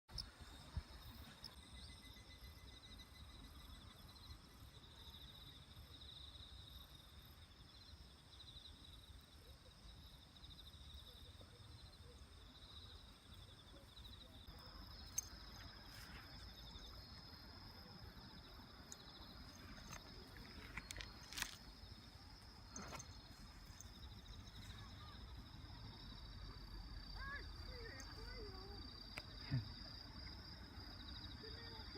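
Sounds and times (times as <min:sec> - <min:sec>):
higher insect trill: 0:00.1 - 0:31.9
insect trilling: 0:18.8 - 0:25.6.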